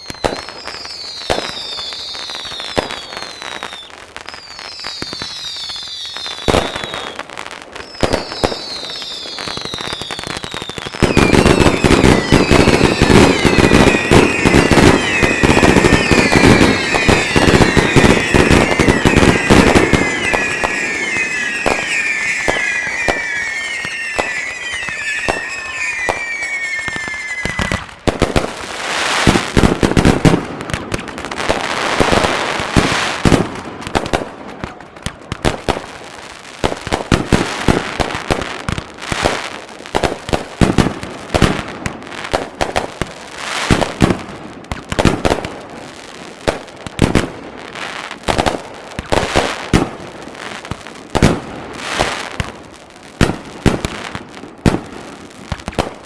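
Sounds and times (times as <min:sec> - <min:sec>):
firework whistles: 0:00.0 - 0:33.4
fireworks bangs and crackling: 0:00.0 - 0:56.0.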